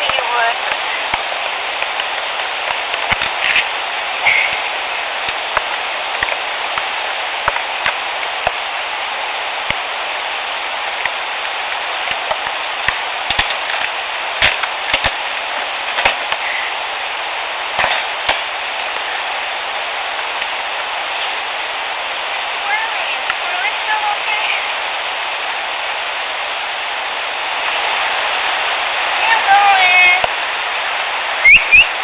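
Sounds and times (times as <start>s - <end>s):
field recorder hiss: 0.0s - 32.0s
small sharp snaps and pops: 0.1s - 3.6s, 11.0s - 15.2s.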